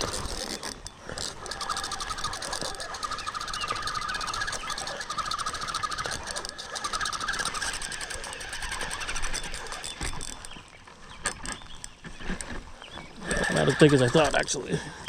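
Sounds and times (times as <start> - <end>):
fishing reel whirring click: 0.0 - 10.6.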